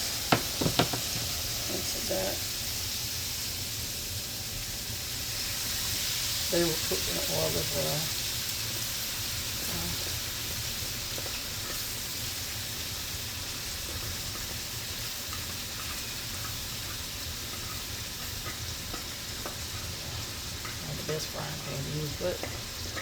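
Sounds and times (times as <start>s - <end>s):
food sizzling in a frying pan: 0.0s - 23.0s
oil popping: 0.1s - 1.4s.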